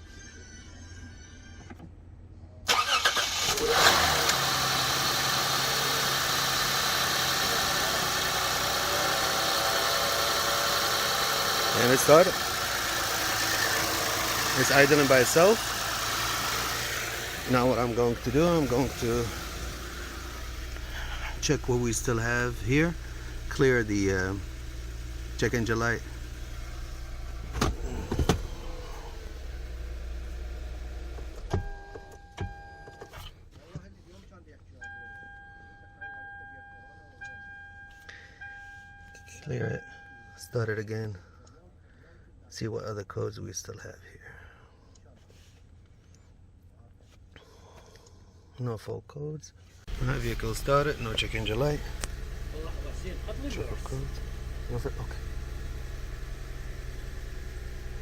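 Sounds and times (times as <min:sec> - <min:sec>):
car engine cranking and idling: 0:02.7 - 0:33.4, 0:49.8 - 0:58.0.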